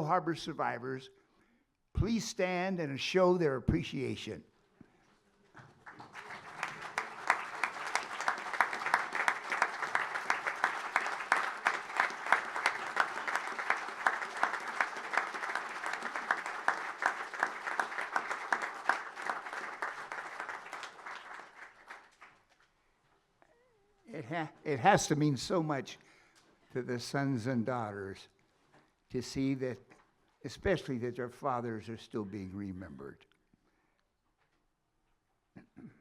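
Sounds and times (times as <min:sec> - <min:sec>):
crowd applauding: 0:05.6 - 0:22.6.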